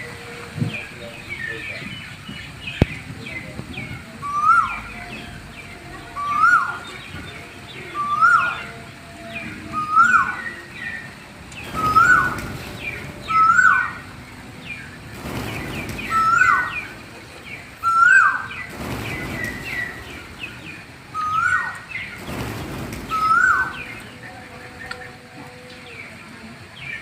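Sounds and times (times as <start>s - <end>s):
parrots whistled calls: 4.2s - 14.2s, 15.6s - 16.9s, 17.8s - 20.4s, 21.1s - 22.2s, 23.1s - 24.0s.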